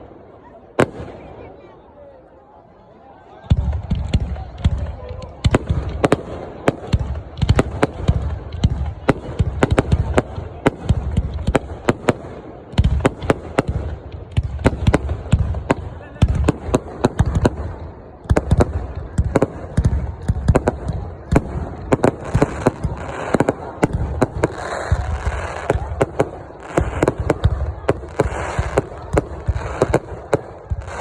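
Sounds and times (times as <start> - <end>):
fireworks bangs and booms: 0.0 - 1.8, 3.4 - 31.0
fireworks crackling hiss: 21.4 - 31.0.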